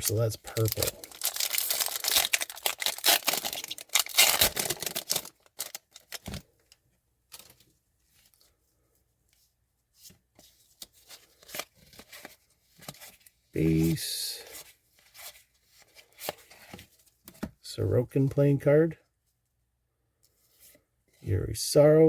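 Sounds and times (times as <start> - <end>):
wrapper tearing and crinkling: 0.0 - 6.4.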